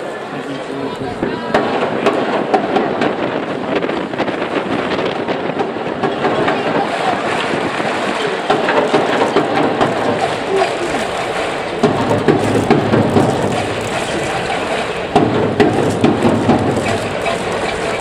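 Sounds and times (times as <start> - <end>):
stadium crowd noise: 0.0 - 18.0
wind buffeting microphone: 0.1 - 18.0
sharp claps and clicks: 6.0 - 18.0.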